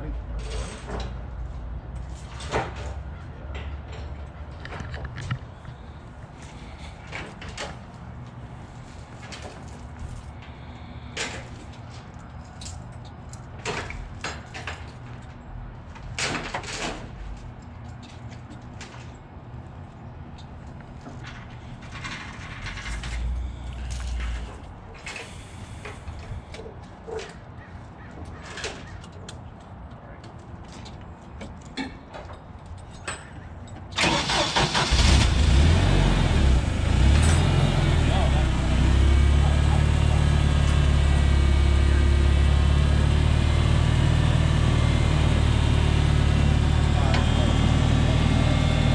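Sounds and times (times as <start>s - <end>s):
metallic clanks and scrapes: 0.4s - 1.2s, 21.1s - 26.0s
forklift engine running: 34.0s - 48.9s.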